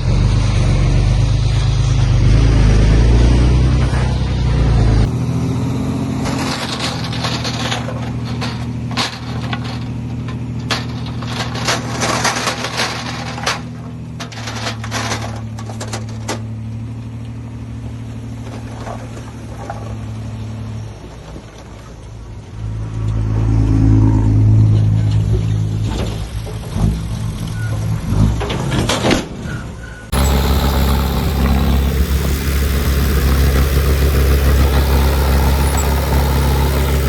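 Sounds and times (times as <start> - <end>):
diesel engine running: 30.1 - 37.0
heavy low rumble: 30.1 - 37.0.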